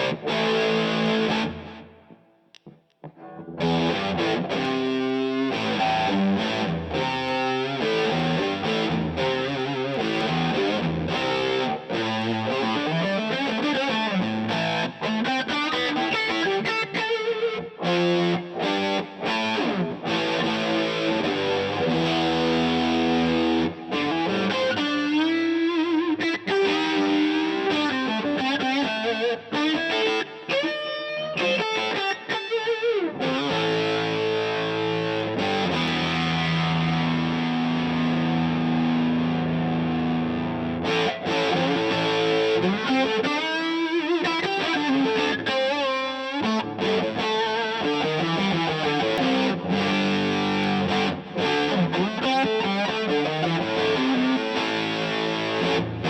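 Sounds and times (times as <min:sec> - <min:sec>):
overdriven electric guitar: 0:00.0 - 0:56.0.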